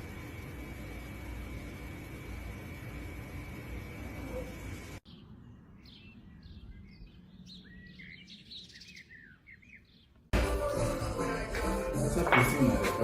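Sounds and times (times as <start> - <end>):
small birds chirping: 5.0 - 10.3.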